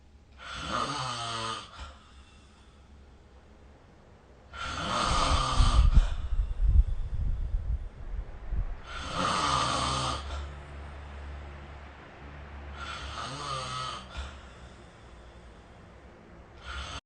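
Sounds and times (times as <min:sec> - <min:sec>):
person snoring: 0:00.4 - 0:02.0, 0:04.5 - 0:06.6, 0:08.8 - 0:10.6, 0:12.7 - 0:14.8, 0:16.6 - 0:17.0.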